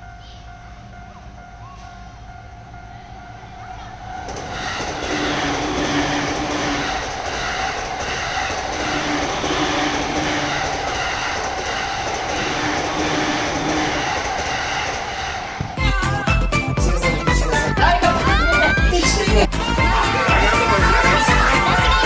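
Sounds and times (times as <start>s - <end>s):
crossing warning bell ringing: 0.0s - 15.2s
train wheels on rails: 0.0s - 16.1s.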